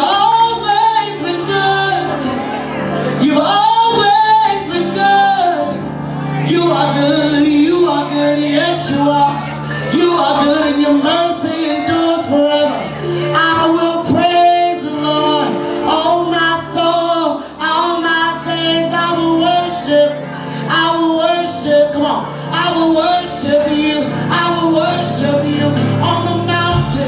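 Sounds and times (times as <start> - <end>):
male and female voices singing: 0.0 - 27.0
instrumental accompaniment: 25.8 - 27.0.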